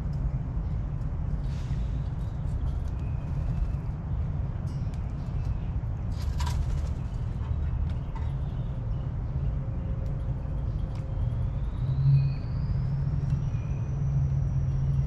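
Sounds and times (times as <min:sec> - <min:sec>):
faint bird chirps: 0:10.5 - 0:15.0.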